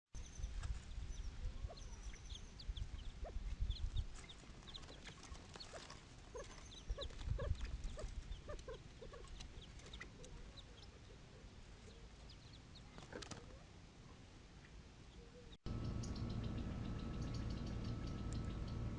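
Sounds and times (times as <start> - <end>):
chicks peeping: 0.5 - 11.2, 15.7 - 18.9
low rumble: 15.7 - 18.9.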